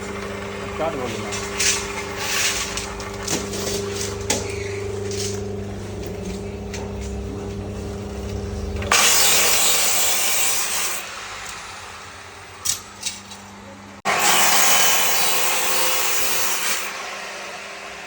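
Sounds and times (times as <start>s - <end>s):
machinery electric hum: 0.0s - 14.1s.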